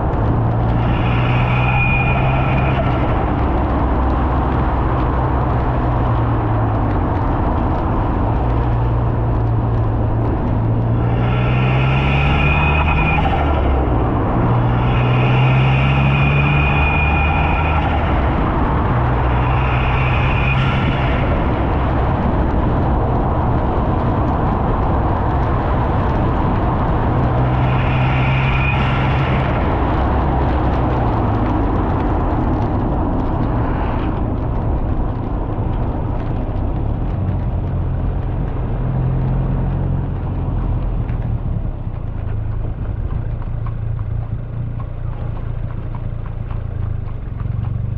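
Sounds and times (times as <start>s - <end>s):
high turbo whistle: 11.3s - 13.8s, 14.8s - 18.0s.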